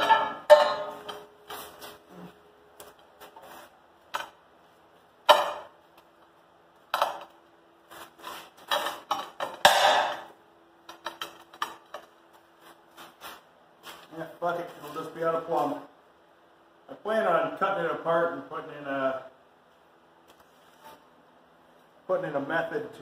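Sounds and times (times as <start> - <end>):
metal frame clanking: 0.0 - 1.3.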